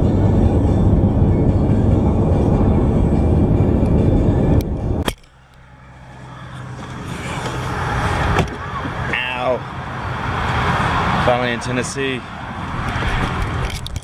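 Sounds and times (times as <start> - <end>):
music: 0.0 - 5.0
car driving rumble: 0.0 - 14.0.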